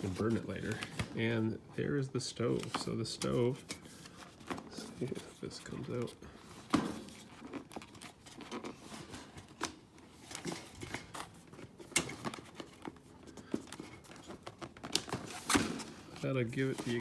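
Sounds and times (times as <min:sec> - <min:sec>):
cardboard box rustling and scraping: 0:06.6 - 0:17.0.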